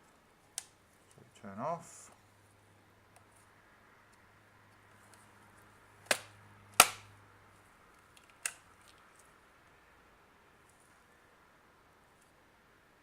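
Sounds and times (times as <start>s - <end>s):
sharp clicks from handling: 8.0s - 9.0s.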